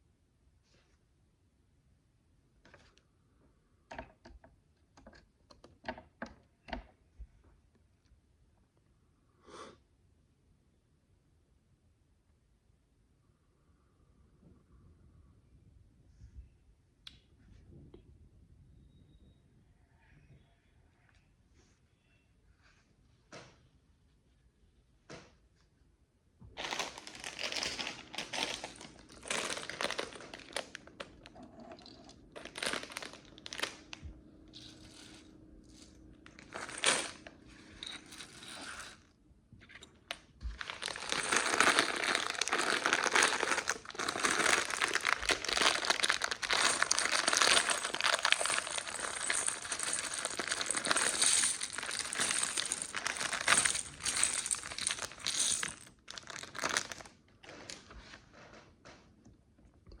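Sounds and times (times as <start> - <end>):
hands rummaging through plastic bricks: 26.6 - 39.1, 40.5 - 57.9.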